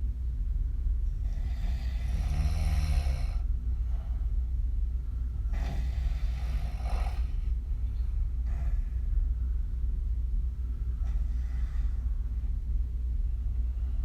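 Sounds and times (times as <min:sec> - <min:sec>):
steady low rumble: 0:00.0 - 0:14.0
woman snoring: 0:01.2 - 0:03.4, 0:05.5 - 0:07.5.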